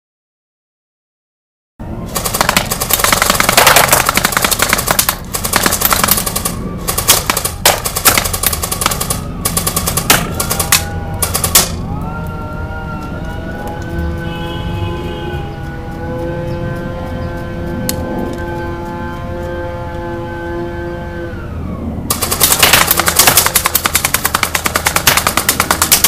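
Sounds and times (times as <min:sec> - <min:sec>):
wailing siren-like tone: 0:01.8 - 0:02.2, 0:05.8 - 0:07.6, 0:08.6 - 0:22.1
airsoft rifle firing: 0:02.1 - 0:11.8, 0:22.1 - 0:26.0.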